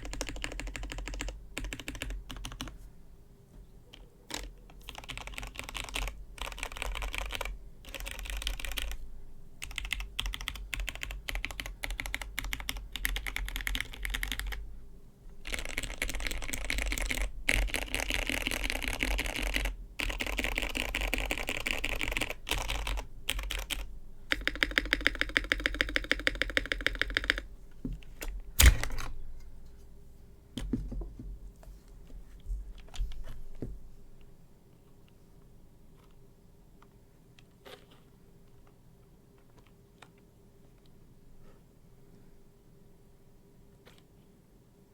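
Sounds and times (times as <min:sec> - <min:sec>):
mechanical keyboard typing: 0:00.0 - 0:02.7, 0:04.0 - 0:09.0, 0:09.6 - 0:14.6, 0:15.4 - 0:27.5.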